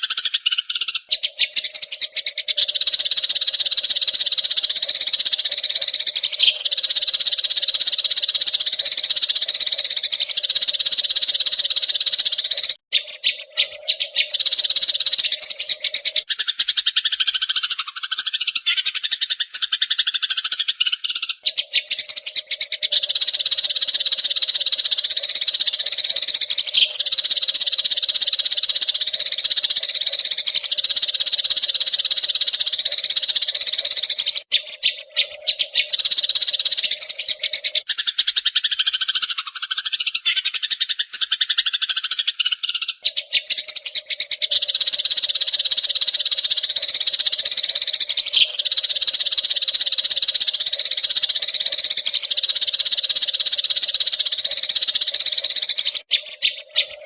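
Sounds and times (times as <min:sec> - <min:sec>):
sparrows chattering: 0:00.0 - 0:57.0.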